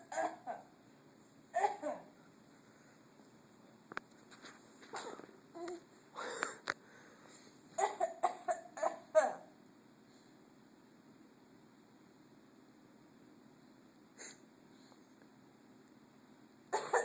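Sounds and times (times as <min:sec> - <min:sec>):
child fake coughing: 0:00.0 - 0:00.7, 0:01.6 - 0:02.1, 0:07.8 - 0:09.5, 0:16.7 - 0:17.0.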